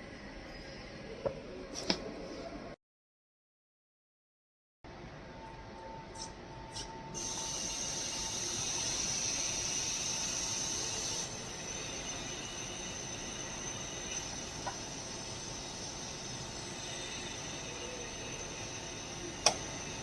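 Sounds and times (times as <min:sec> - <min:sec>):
welding machine hiss: 0:07.2 - 0:20.0.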